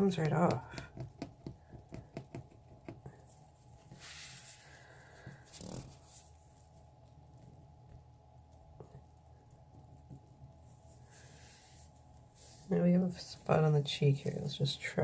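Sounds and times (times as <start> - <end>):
faint rubbing on plastic: 2.8 - 6.8, 10.7 - 14.3.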